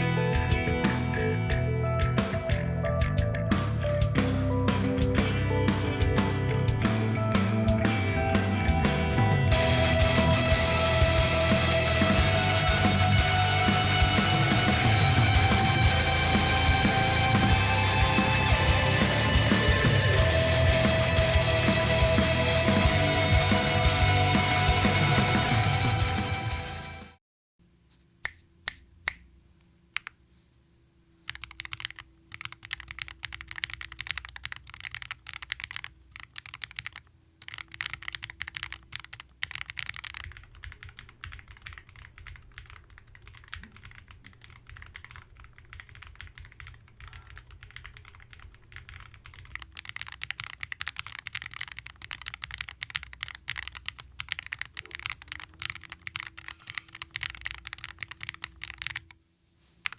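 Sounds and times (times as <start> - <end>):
typing on mechanical keyboard: 31.3 - 59.2.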